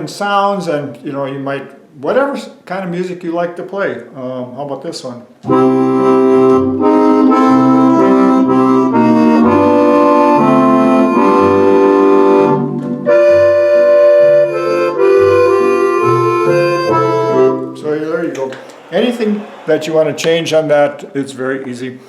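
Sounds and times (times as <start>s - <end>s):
alternating bass notes: 5.5s - 17.7s
accordion playing held chords: 5.5s - 19.5s
sustained organ voice: 17.3s - 20.7s.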